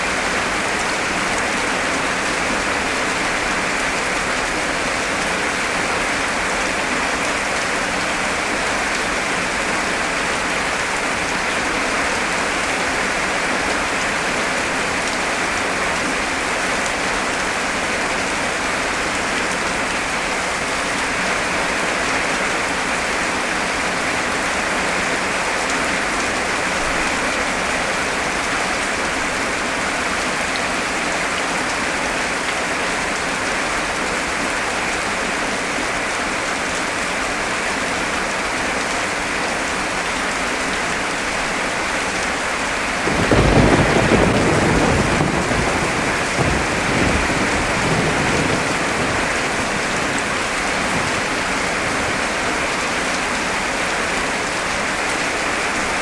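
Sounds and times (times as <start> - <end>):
heavy rain pouring: 0.0 - 56.0
thunder rumbling: 43.0 - 51.5.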